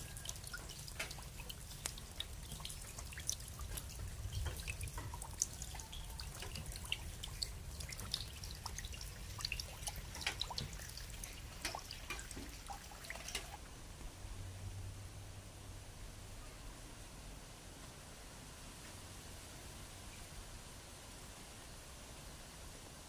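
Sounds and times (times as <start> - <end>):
rainwater dripping: 0.0 - 13.7
low steady rumble: 0.0 - 23.0.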